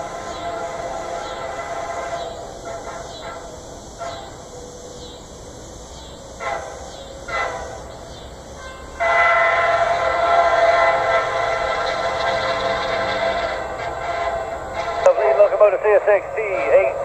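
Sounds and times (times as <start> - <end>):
locomotive air horn blasts: 0.0 - 4.5, 6.4 - 8.0, 8.6 - 17.0.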